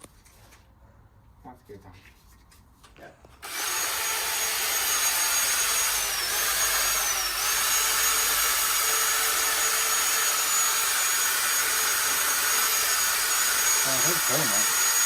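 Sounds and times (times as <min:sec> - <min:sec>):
electric power tool whining: 0:03.4 - 0:15.0.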